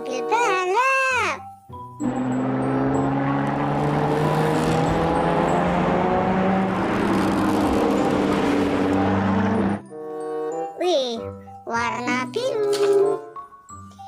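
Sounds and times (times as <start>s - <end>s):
race car engine drone: 2.0s - 9.9s.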